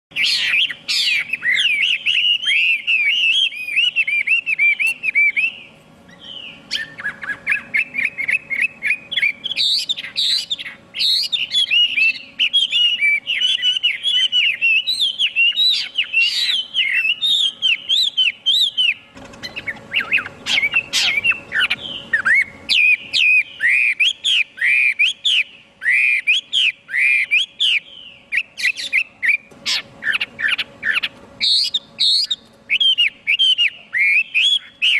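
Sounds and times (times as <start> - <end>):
bird singing whistled notes: 0.1 - 34.9.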